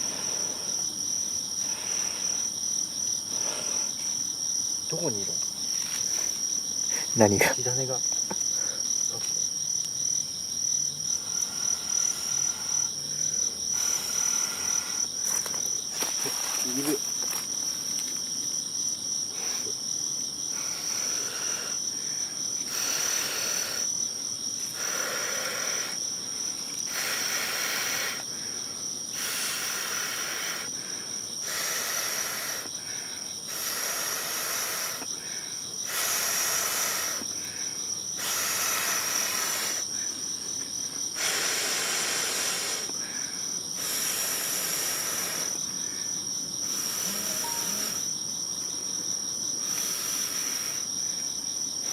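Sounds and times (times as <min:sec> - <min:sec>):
crickets chirring: 0:00.0 - 0:51.9
person blowing on ember: 0:29.1 - 0:30.7, 0:31.4 - 0:32.7, 0:33.5 - 0:35.1, 0:35.8 - 0:37.2, 0:38.2 - 0:39.9, 0:41.2 - 0:43.0, 0:43.8 - 0:45.6, 0:46.6 - 0:48.1.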